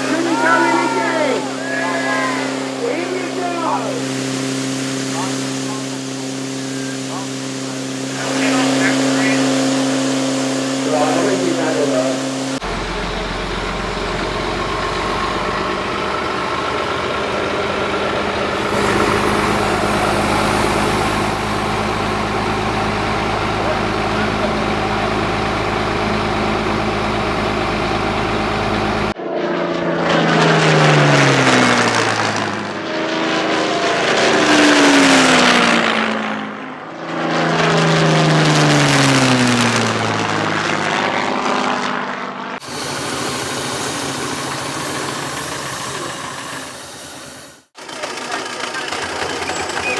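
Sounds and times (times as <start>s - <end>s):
loud rushing hiss: 0.0s - 26.2s, 42.6s - 47.7s
heavy engine running: 0.0s - 49.9s
hiss: 18.6s - 22.6s, 42.6s - 47.7s.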